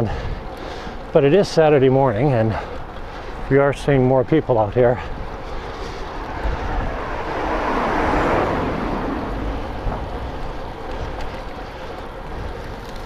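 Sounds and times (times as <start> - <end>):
vehicle passing: 4.6 - 13.0
wind rushing over microphone: 4.7 - 13.0.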